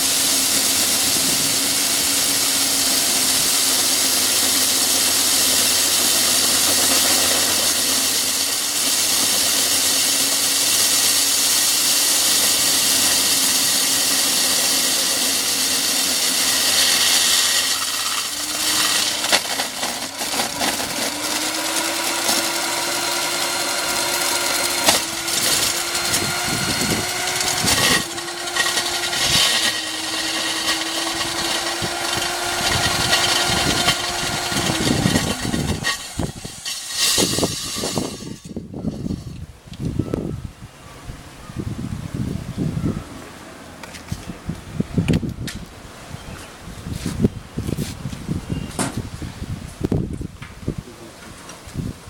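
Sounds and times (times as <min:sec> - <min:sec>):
drill bit knocking: 0:00.0 - 0:38.6
power drill boring: 0:00.0 - 0:39.4.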